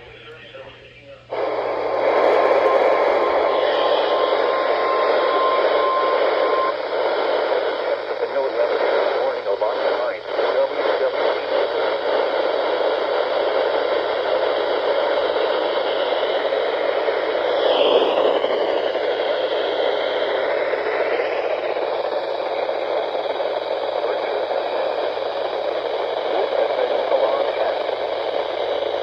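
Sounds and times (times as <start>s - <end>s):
radio static hiss: 0.0s - 29.0s
faint wavering whistle: 3.9s - 6.8s.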